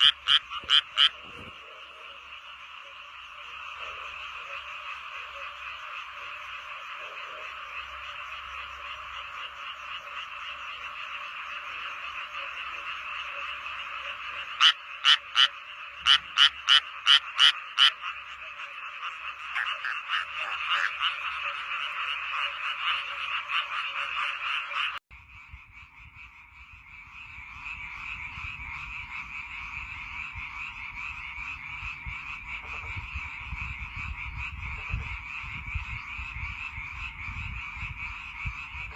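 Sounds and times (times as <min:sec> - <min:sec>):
nearby frog calling rapidly: 0:00.0 - 0:25.0
chorus of frogs calling: 0:00.0 - 0:38.9.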